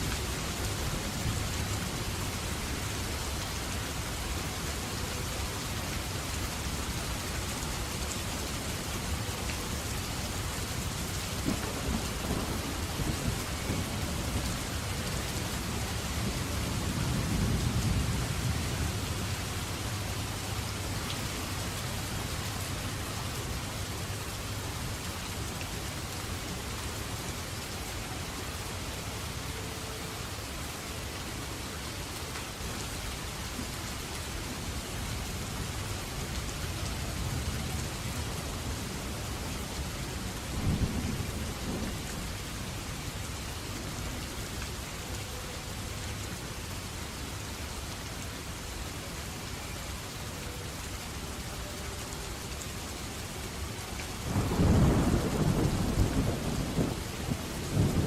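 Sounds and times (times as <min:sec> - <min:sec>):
steady rain: 0:00.0 - 0:58.0
thunder rumble: 0:11.4 - 0:14.9, 0:54.3 - 0:58.0.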